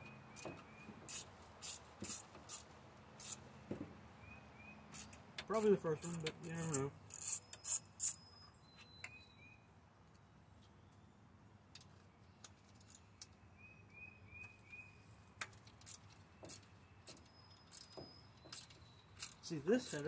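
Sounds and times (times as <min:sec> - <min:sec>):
bird chirps: 0:04.2 - 0:05.0, 0:07.4 - 0:09.7, 0:13.2 - 0:15.1, 0:16.1 - 0:20.0.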